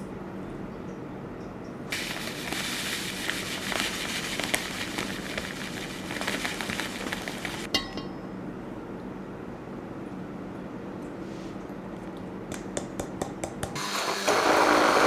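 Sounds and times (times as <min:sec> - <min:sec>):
food sizzling in a pan: 0:01.9 - 0:07.7
metallic clink: 0:07.7 - 0:08.4.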